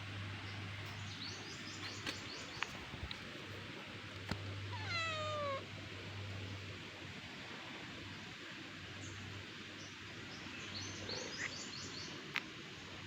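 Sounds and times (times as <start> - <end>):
steady low hum and hiss: 0.0 - 13.0
cat meowing: 4.7 - 5.6.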